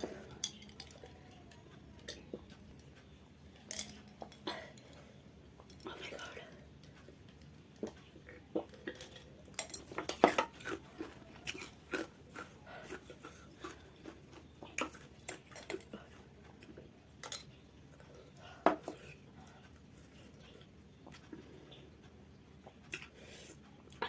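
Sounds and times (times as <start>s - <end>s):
tableware clicking and clinking: 0.1s - 1.1s, 3.6s - 4.4s, 9.0s - 10.8s.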